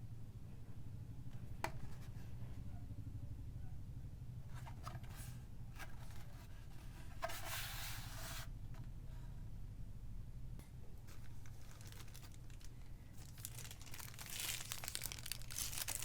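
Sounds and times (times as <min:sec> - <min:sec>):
steady low hum: 0:00.0 - 0:16.0
packaging parts scraping: 0:11.1 - 0:16.0.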